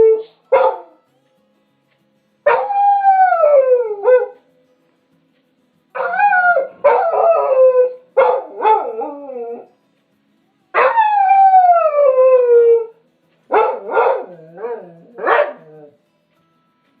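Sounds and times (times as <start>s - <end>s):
dog howling: 0.0s - 0.9s, 2.5s - 4.4s, 6.0s - 9.7s, 10.8s - 12.9s, 13.5s - 16.0s.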